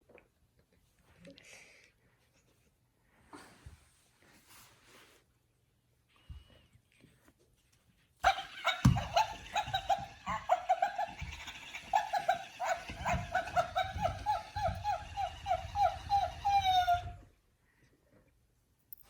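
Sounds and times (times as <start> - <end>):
dog toy squeaking: 8.2 - 17.2.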